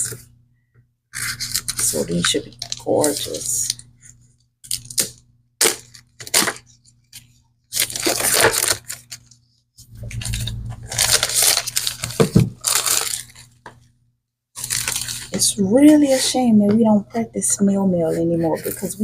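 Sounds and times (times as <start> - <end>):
packaging crinkling and tearing: 4.6 - 9.3, 9.9 - 13.7, 14.6 - 15.5.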